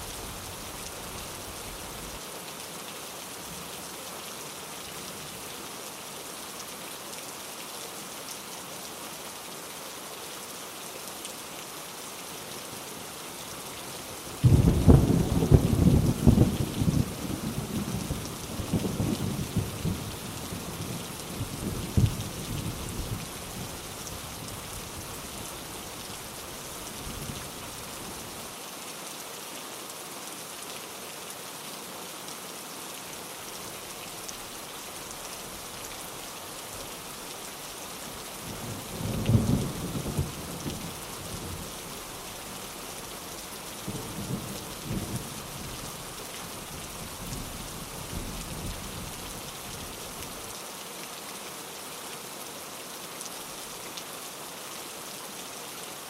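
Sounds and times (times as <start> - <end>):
steady rain falling: 0.0 - 56.0
low rumbles of thunder: 14.4 - 20.1.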